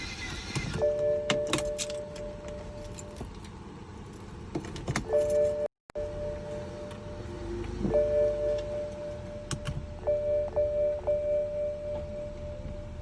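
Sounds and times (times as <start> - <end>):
car starter whining: 0.0 - 2.0
keys jingling: 1.4 - 3.5.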